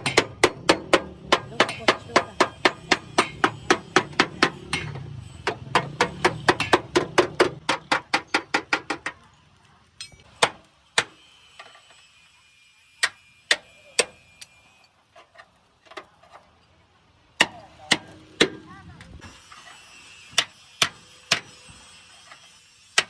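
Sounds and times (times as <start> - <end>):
hammer striking metal: 0.0 - 9.1.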